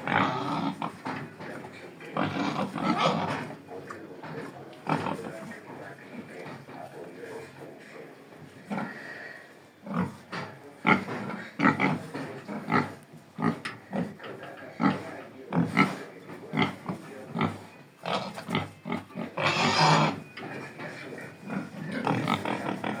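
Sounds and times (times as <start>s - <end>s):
pig squealing: 0.0s - 1.0s, 2.2s - 3.6s, 17.4s - 20.4s, 21.4s - 23.0s
pigs grunting: 0.0s - 23.0s.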